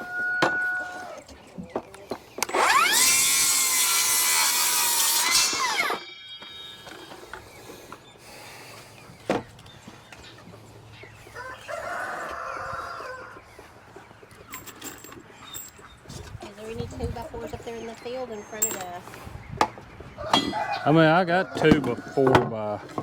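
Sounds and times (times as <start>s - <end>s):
rooster crowing: 0.0s - 1.2s, 11.3s - 13.4s, 20.2s - 22.3s.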